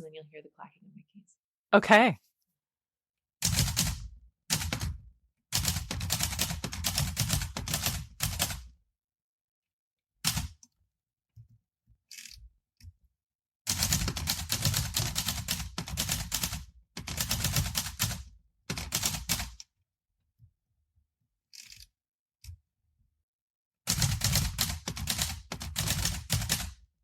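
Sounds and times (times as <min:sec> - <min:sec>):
typewriter keys clacking: 0:05.6 - 0:08.6, 0:13.7 - 0:19.6, 0:23.9 - 0:26.7.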